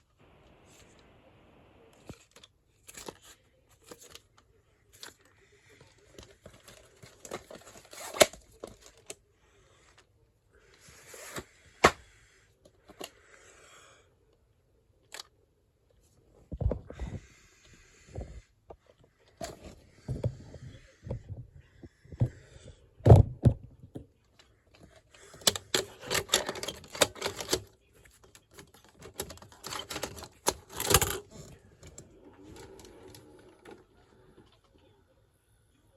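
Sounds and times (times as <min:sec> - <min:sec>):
clicks and scrapes: 0:24.3 - 0:33.9.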